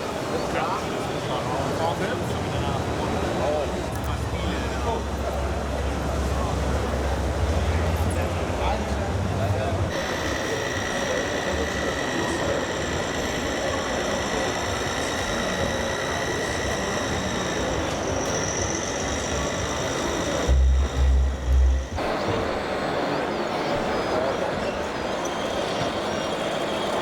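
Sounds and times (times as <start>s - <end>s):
exhibition hall din: 0.0s - 27.0s
small electric motors whining: 9.9s - 27.0s
heavy low thumps: 20.5s - 22.0s.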